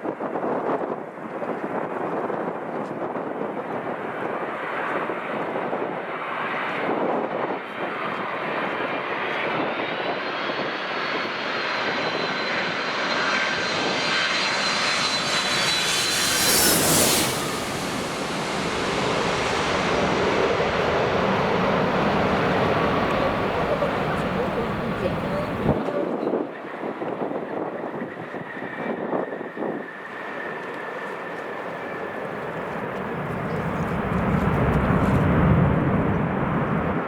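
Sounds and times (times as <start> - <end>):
airliner engine whine: 0.0 - 37.0
wind buffeting microphone: 0.0 - 37.0.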